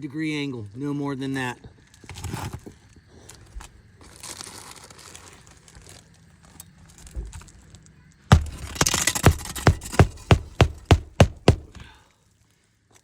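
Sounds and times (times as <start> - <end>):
loud knock: 8.3 - 11.8
shingles crinkling and scraping: 8.3 - 11.9.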